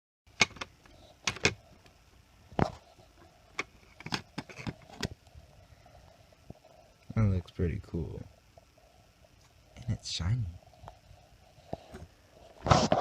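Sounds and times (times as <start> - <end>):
clicks and knocks of laptop parts: 0.4 - 1.6.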